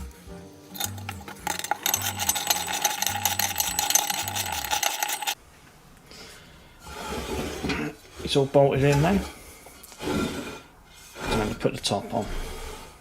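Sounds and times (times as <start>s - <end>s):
ratchet wrench clicking: 0.8s - 5.4s.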